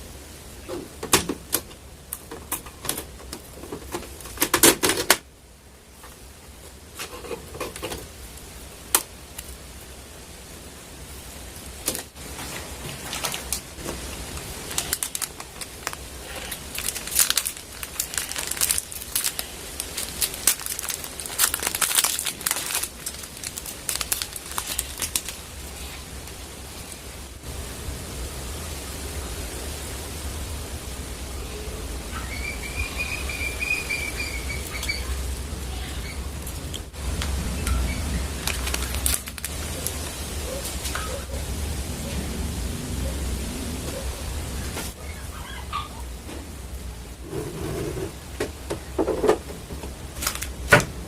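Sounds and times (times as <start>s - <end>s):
packaging crinkling: 11.8s - 25.9s, 38.0s - 40.1s, 50.1s - 50.7s.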